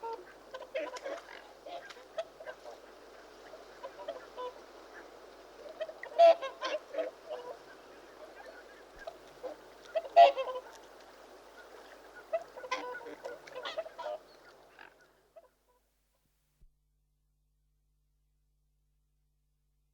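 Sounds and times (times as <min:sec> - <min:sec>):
swans calling: 0:00.0 - 0:10.8, 0:11.6 - 0:15.2.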